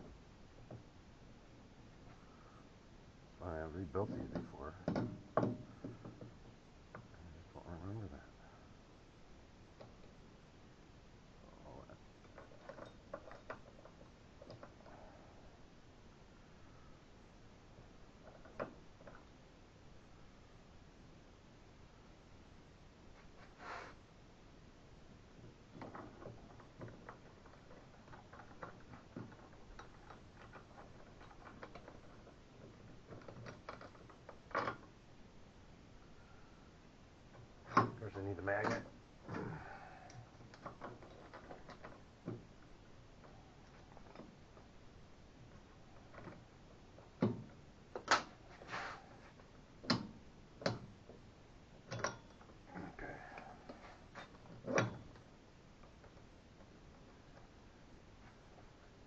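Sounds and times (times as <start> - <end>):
short scraping sounds: 23.2 - 24.0, 48.5 - 49.3
parts and tools clicking on bench: 49.8 - 51.2, 51.8 - 52.6
small metal parts clicking: 51.8 - 53.1.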